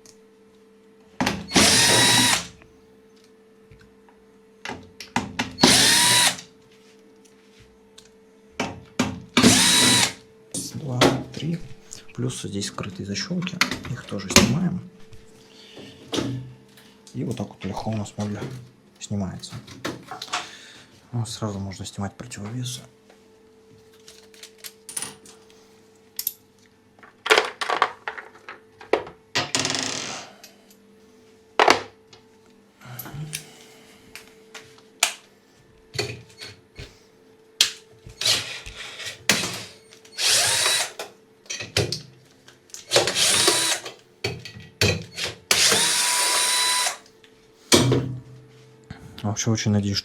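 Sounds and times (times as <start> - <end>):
cordless drill bursts: 1.5 - 2.6, 5.6 - 6.4, 9.4 - 10.2, 38.2 - 39.1, 40.2 - 41.0, 42.9 - 43.9, 45.2 - 47.0.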